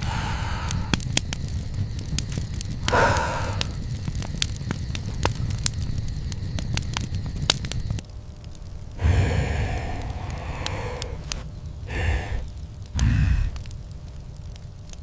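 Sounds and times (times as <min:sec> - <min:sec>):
breathy rush: 0:00.0 - 0:01.0, 0:02.8 - 0:03.8, 0:09.0 - 0:13.7
campfire crackling and popping: 0:00.0 - 0:15.0.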